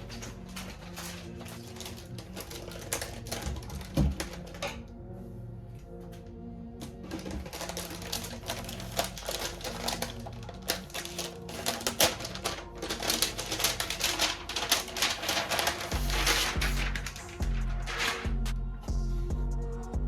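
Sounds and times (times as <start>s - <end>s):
quiet background music: 0.0s - 20.0s
fast typing on keyboard: 7.1s - 18.2s.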